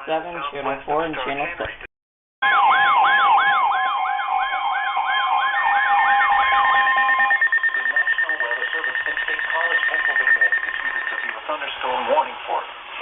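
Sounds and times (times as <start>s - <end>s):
sweeping siren-like tone: 2.4s - 11.3s
steady alert tones: 2.4s - 11.4s
high steady tone: 2.4s - 12.0s
fast ticking: 7.4s - 11.5s.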